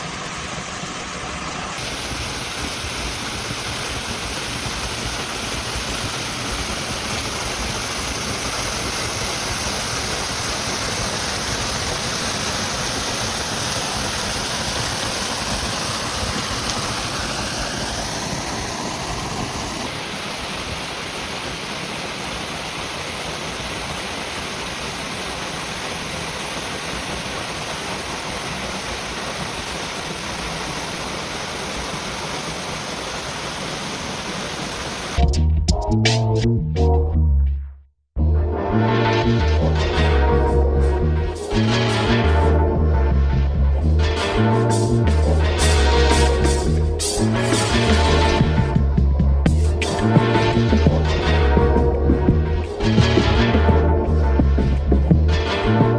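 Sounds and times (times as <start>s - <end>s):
waterfall rushing: 0.0s - 35.2s, 44.2s - 48.6s.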